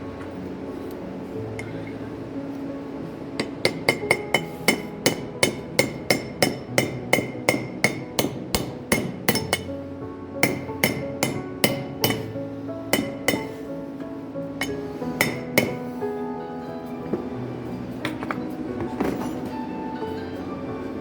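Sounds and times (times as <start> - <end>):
mechanical hum: 0.0 - 21.0
sharp metallic knocks: 3.4 - 9.8, 10.4 - 12.4, 13.0 - 13.6, 14.6 - 15.8.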